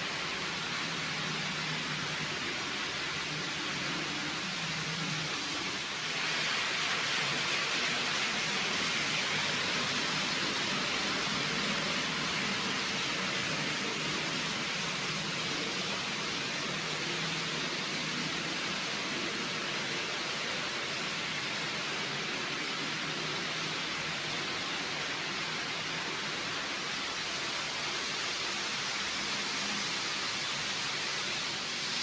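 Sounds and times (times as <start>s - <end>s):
steady hiss: 0.0s - 32.0s.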